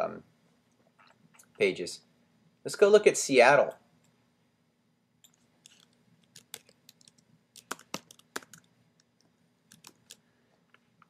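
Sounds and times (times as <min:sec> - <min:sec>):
typing on computer keyboard: 0:05.3 - 0:08.7, 0:09.7 - 0:10.2.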